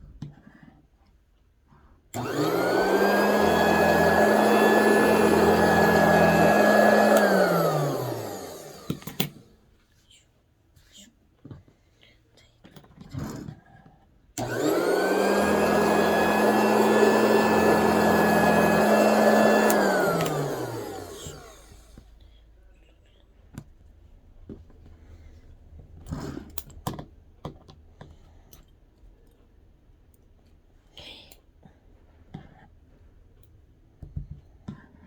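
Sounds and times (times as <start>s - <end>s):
cutting machine motor whining: 2.2s - 9.4s, 14.4s - 22.0s.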